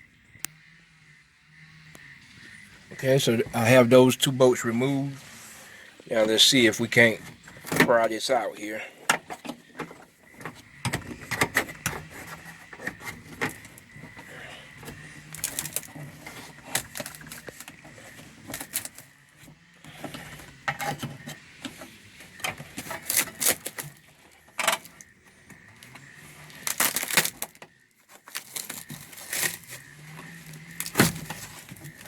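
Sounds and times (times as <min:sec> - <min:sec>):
foam and vinyl cracking and snapping: 0:14.8 - 0:19.1, 0:20.5 - 0:25.1, 0:25.8 - 0:32.0.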